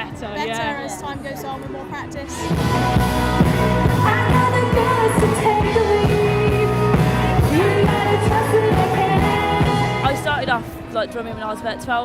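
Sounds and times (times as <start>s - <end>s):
pop-rock band music: 2.3s - 10.9s.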